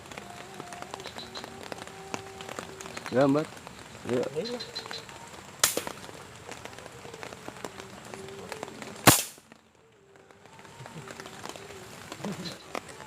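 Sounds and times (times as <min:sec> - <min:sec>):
air rifle shot: 0:05.6 - 0:06.0, 0:09.0 - 0:09.4.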